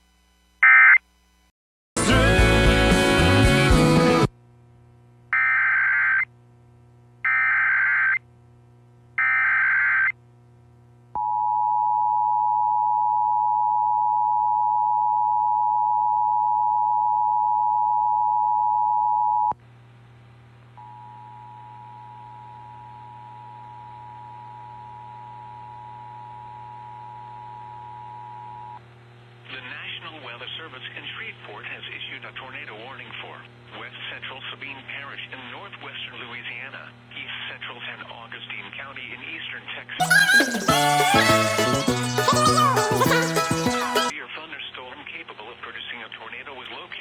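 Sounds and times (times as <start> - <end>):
buzzy data bursts: 40.0 - 44.1.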